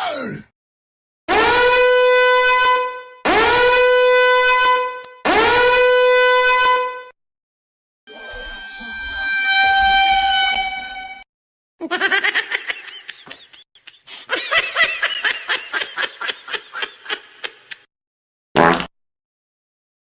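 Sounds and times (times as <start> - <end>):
horn-like blare: 1.3 - 7.2, 8.1 - 11.3
squeaky pitched bursts: 8.1 - 11.2.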